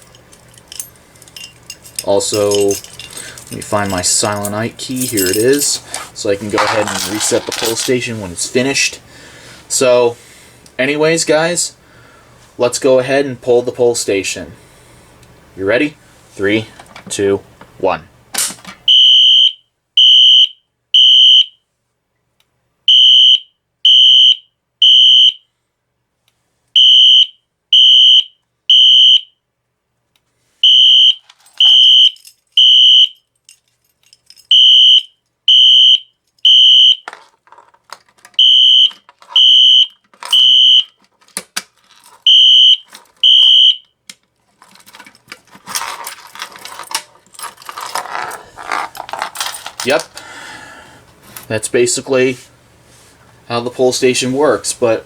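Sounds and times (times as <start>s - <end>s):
clicking and rattling handling noise: 0.0s - 8.8s, 16.7s - 18.9s, 31.2s - 32.6s, 33.4s - 34.6s, 36.3s - 50.4s, 51.0s - 51.6s
fire alarm horn blasts: 18.9s - 21.6s, 22.9s - 25.4s, 26.8s - 29.3s, 30.6s - 33.2s, 34.5s - 37.0s, 38.4s - 40.9s, 42.3s - 43.9s.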